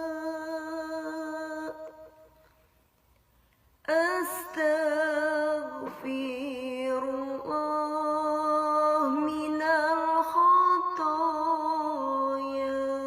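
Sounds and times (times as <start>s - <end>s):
person singing a chant: 0.0s - 2.4s, 3.9s - 13.0s.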